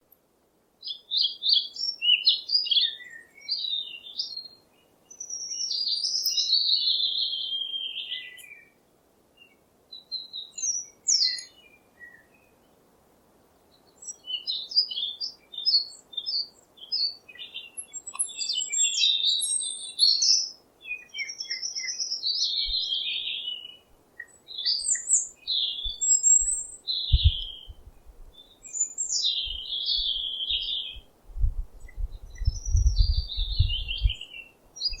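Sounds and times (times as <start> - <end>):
songbirds chirping and singing: 0.9 - 8.7, 10.1 - 12.5, 13.8 - 35.0
low thumps: 27.1 - 28.3, 31.3 - 34.2.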